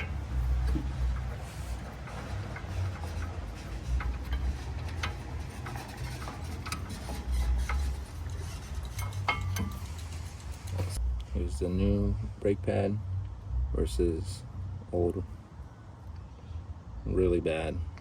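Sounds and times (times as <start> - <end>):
metal brake parts clicking: 0.0 - 11.0.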